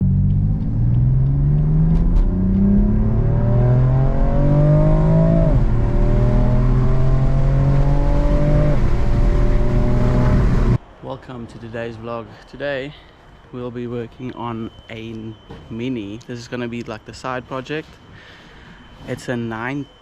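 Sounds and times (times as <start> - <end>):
car engine accelerating hard: 0.0 - 10.8.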